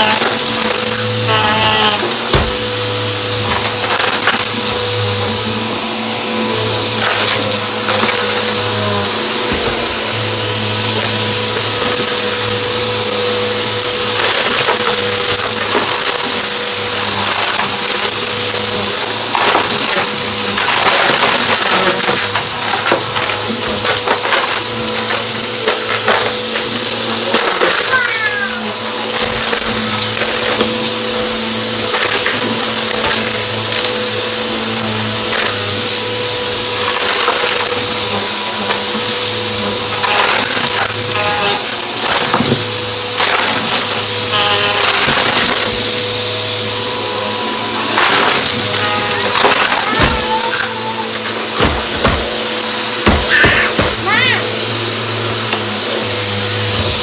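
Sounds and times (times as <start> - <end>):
debris crackling in vacuum: 0.0 - 57.0
vacuum cleaner running: 0.0 - 57.0.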